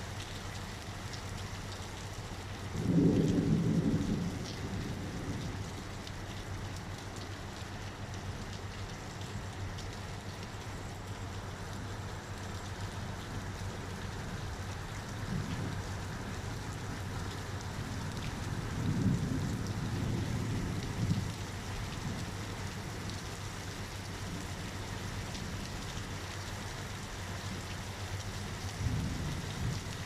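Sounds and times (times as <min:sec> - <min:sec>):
steady rain falling: 0:00.0 - 0:30.0
thunder rumbling: 0:02.7 - 0:05.9, 0:15.2 - 0:22.3, 0:28.8 - 0:30.0.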